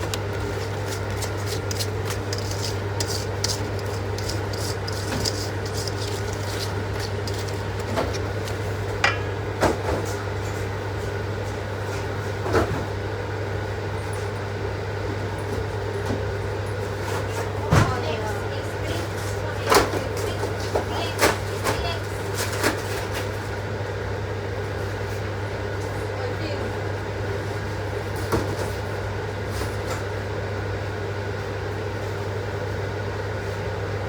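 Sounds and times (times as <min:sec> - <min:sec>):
steady hum: 0:00.0 - 0:12.4
sharp knocks of handled things: 0:09.0 - 0:10.0.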